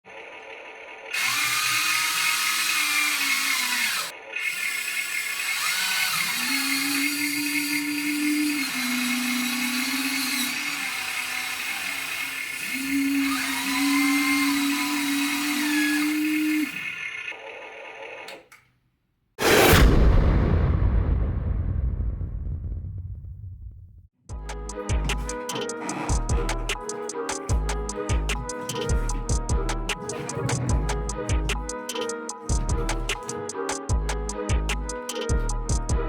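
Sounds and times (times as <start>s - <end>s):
small electric motors whining: 0.1s - 18.5s, 24.6s - 33.8s.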